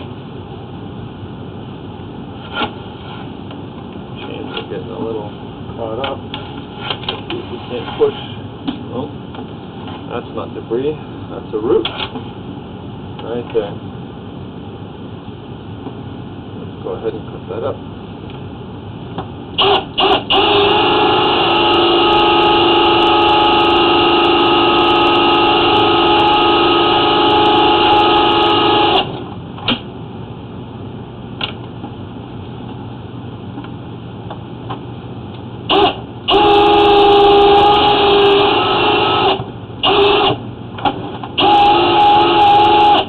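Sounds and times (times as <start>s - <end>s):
drain cleaning machine motor whine: 19.6s - 29.2s, 35.7s - 40.4s, 41.4s - 43.0s.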